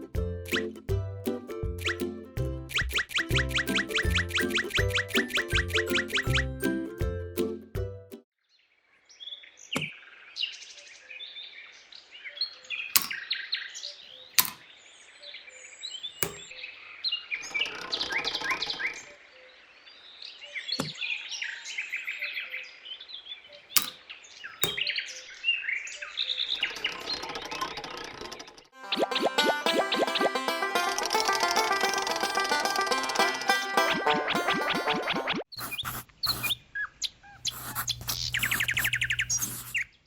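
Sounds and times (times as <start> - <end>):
small birds chirping: 2.7 - 6.5, 9.1 - 27.7, 35.5 - 40.0
sharp click: 13.0 - 13.2, 14.4 - 14.6, 16.2 - 16.5, 23.8 - 24.0, 24.6 - 24.9.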